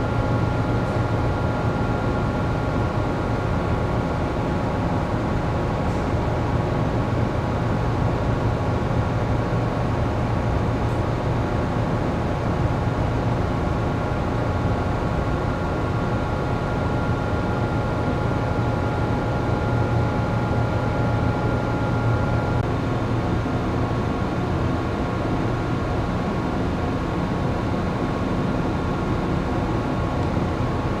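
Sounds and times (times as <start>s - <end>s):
ship machinery and ventilation hum: 0.0s - 31.0s.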